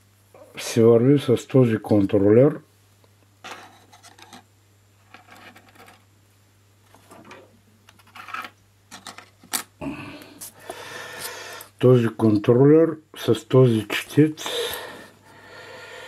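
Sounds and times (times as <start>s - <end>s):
small parts and tools clicking: 7.0s - 9.7s.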